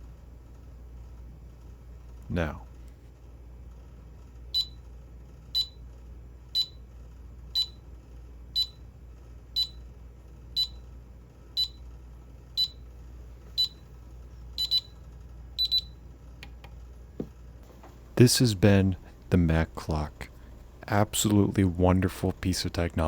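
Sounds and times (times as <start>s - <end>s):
alarm clock beeping: 14.6s - 14.9s, 15.6s - 15.9s.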